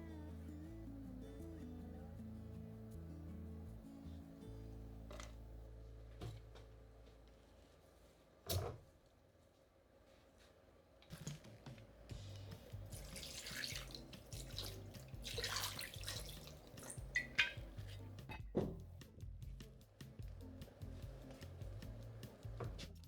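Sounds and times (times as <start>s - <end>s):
quiet background music: 0.0s - 9.0s, 11.1s - 23.0s
water running: 12.3s - 18.3s.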